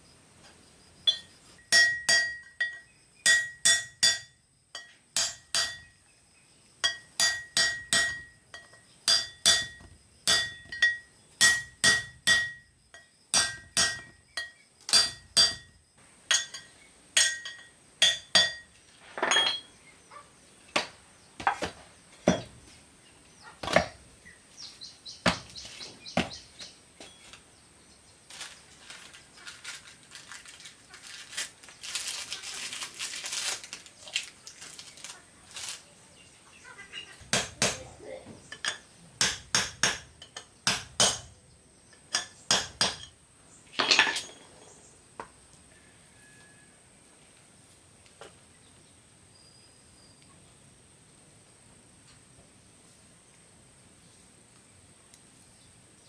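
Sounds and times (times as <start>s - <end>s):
hammer striking metal: 1.1s - 5.9s, 6.8s - 12.6s, 13.4s - 15.7s, 16.3s - 18.7s, 37.3s - 37.8s, 38.6s - 41.4s, 42.1s - 43.1s.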